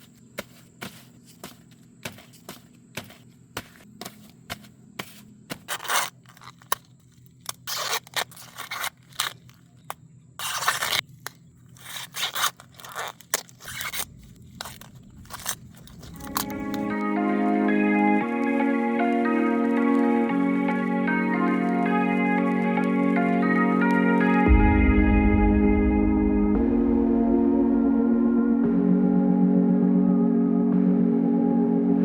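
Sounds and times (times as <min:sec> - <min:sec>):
corn stalks snapping: 0:05.5 - 0:16.9
leaves and husks rustling: 0:10.4 - 0:17.0
music: 0:14.3 - 0:32.0.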